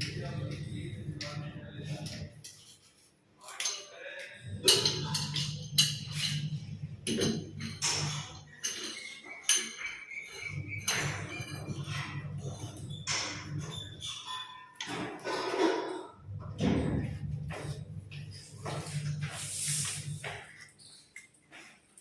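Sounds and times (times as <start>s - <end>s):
low hum: 0.0s - 2.4s, 4.4s - 8.4s, 10.4s - 14.0s, 16.2s - 20.3s
metal tools clinking and scraping: 0.0s - 16.2s.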